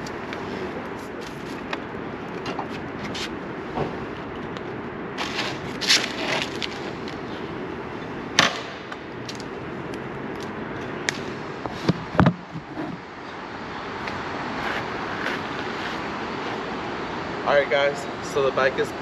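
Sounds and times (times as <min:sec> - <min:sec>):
steady background hiss: 0:00.0 - 0:19.0.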